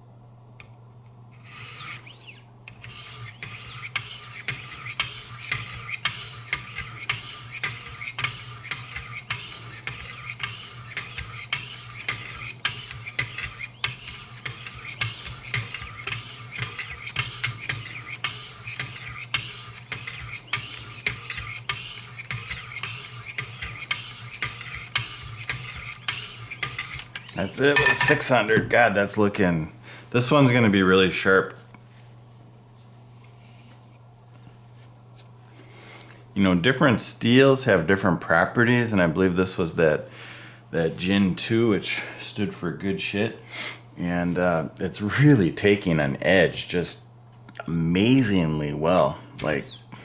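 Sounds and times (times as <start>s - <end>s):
sharpening stone scraping knife blade: 27.8s - 28.3s.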